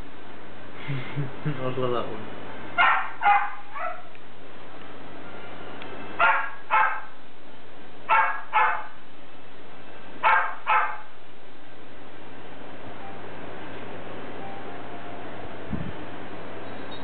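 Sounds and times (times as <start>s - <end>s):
faint steady hum: 0.0s - 17.0s
animal yelping: 2.8s - 4.1s, 6.2s - 7.1s, 8.1s - 9.0s, 10.2s - 11.1s.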